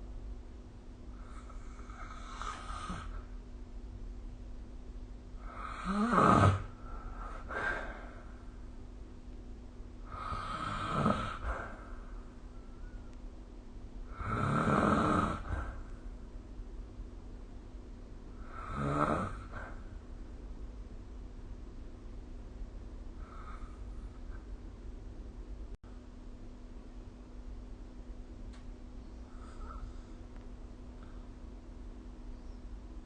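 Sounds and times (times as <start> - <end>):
person snoring: 1.2 - 3.3, 5.4 - 8.2, 10.0 - 11.9, 14.1 - 15.9, 18.4 - 19.9, 23.2 - 24.4.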